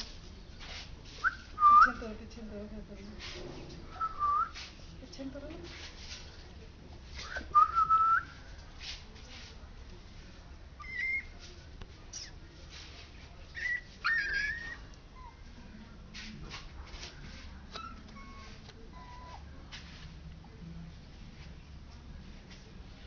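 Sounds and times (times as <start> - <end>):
puppy whining: 10.8 - 11.3, 13.6 - 15.4, 17.7 - 19.5.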